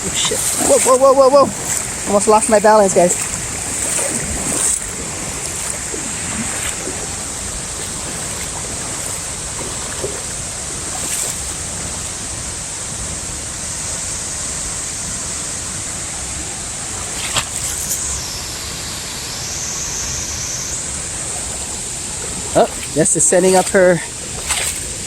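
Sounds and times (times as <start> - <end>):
waterfall roaring: 0.0 - 17.3, 20.8 - 25.0.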